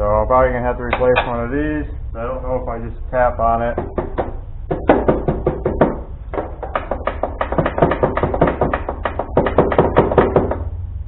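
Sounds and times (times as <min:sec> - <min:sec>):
metal tool tapping on metal: 0:00.9 - 0:01.4.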